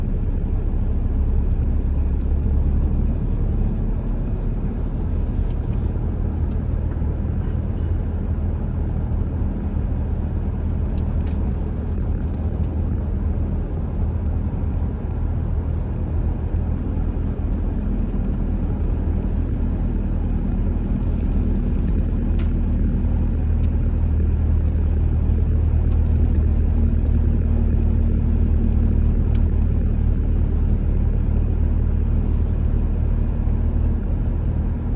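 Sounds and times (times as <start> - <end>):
car engine and tyres rumbling: 0.0 - 34.9.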